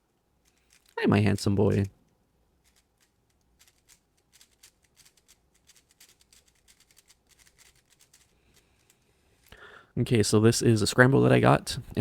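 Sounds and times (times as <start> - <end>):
puzzle cube clicking: 0.5 - 2.0, 2.6 - 9.5.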